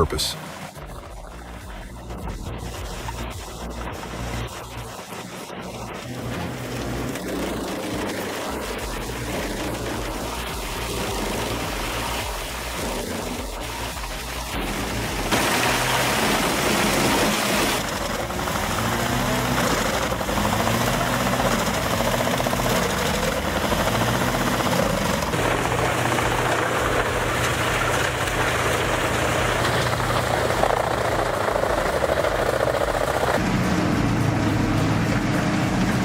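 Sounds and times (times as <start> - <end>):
wood grinding in chipper: 4.2 - 36.0
wood chipper engine: 6.0 - 36.0.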